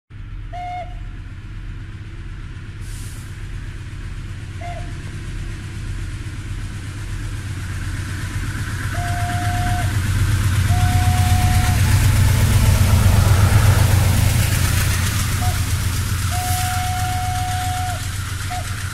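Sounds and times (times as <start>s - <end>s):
low engine rumble: 0.1s - 18.9s
horn toot: 10.7s - 11.9s, 16.3s - 18.6s.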